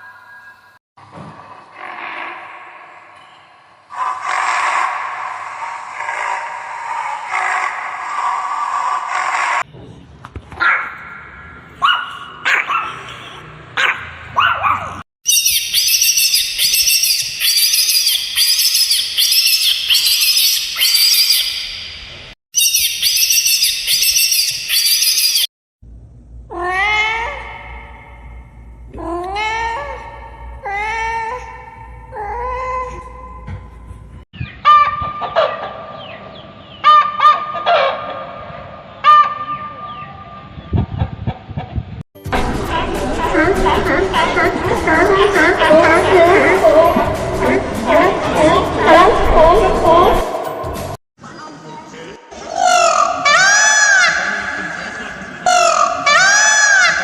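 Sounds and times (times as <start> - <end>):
dog barking: 10.6 - 11.0, 11.8 - 15.0
high-pitched chirping calls: 15.3 - 25.5
chickens clucking: 34.6 - 36.2.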